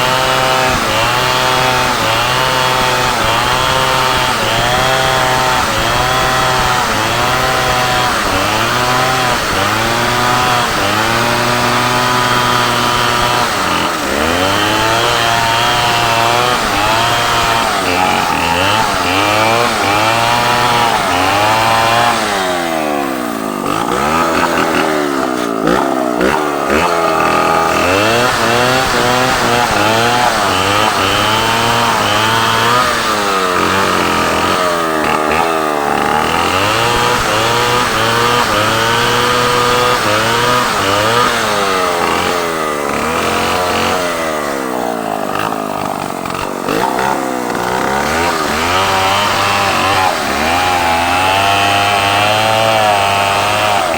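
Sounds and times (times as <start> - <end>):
chainsaws cutting wood: 0.0 - 53.9.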